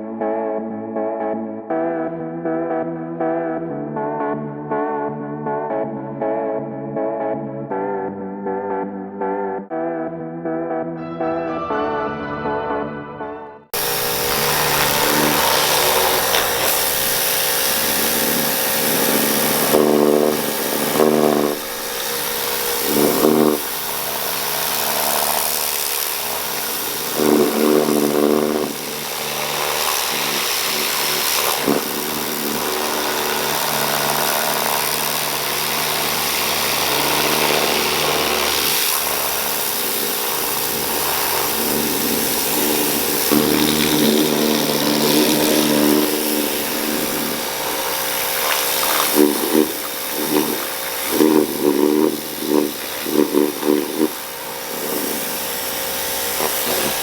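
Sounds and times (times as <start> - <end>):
pressure washer running: 13.7 - 57.0
hiss of water spray: 13.8 - 57.0.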